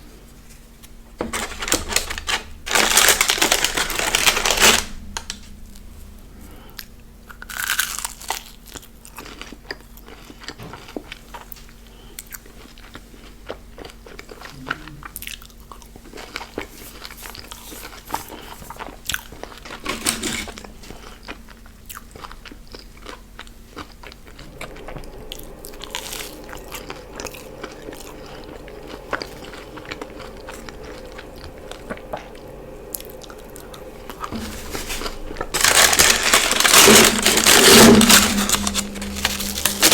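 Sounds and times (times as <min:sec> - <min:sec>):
person crunching food: 0:07.5 - 0:08.4.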